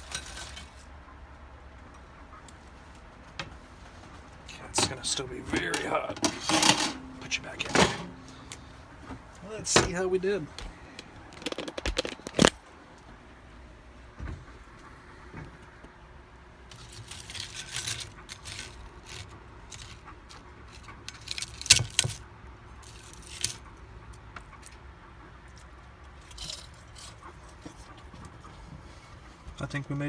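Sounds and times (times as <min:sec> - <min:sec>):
chips clattering on metal rack: 0:00.0 - 0:00.8, 0:04.6 - 0:08.6, 0:16.7 - 0:20.1, 0:20.8 - 0:22.2, 0:22.8 - 0:23.6.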